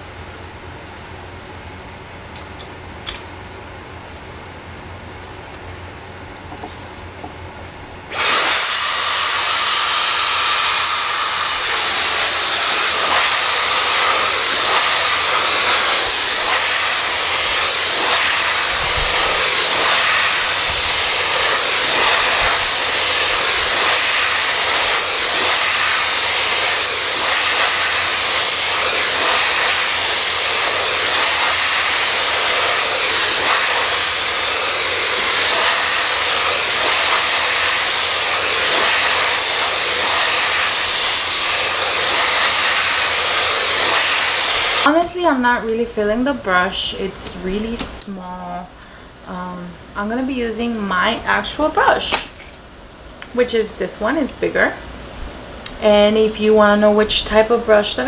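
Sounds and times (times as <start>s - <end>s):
hair dryer blowing: 8.1s - 45.0s.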